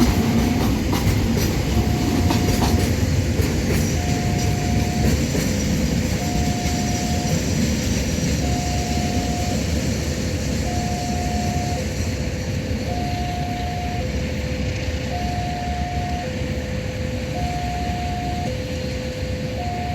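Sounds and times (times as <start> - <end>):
level crossing two-tone alarm: 0.0 - 0.8, 1.7 - 3.0, 4.0 - 5.3, 6.2 - 7.6, 8.4 - 9.8, 10.6 - 11.9, 12.8 - 19.9
rain hiss: 0.0 - 17.5.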